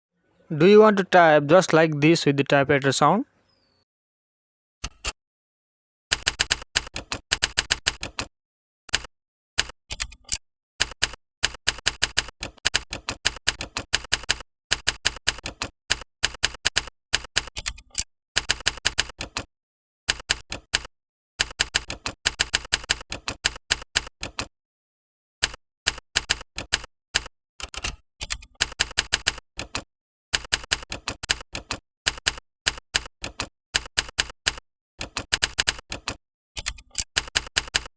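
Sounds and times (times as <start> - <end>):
typewriter key clacks: 6.1 - 8.3, 8.9 - 19.5, 20.1 - 24.5, 25.4 - 29.8, 30.4 - 37.9.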